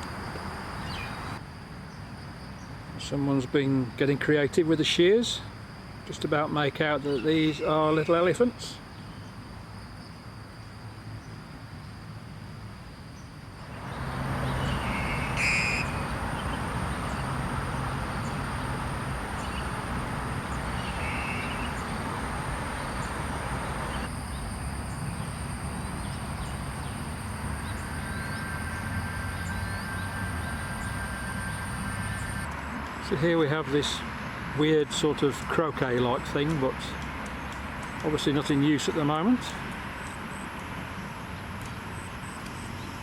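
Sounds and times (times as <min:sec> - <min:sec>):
road traffic rumble: 0:00.0 - 0:01.4, 0:13.4 - 0:43.0
insects buzzing: 0:00.0 - 0:43.0.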